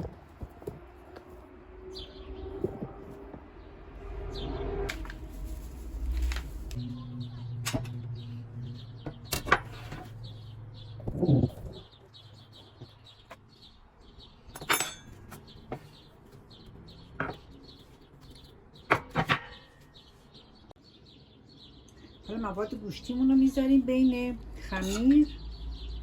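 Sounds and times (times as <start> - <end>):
dough being rolled and handled: 0.0 - 1.7, 15.1 - 20.7
low hum: 0.6 - 12.0
small bird chirping: 6.7 - 26.0.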